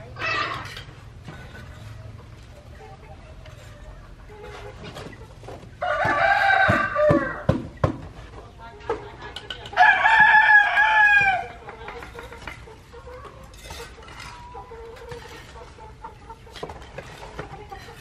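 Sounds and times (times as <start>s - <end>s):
rooster crowing: 5.8s - 7.5s, 9.8s - 11.5s
sharp knocks: 6.0s - 8.1s.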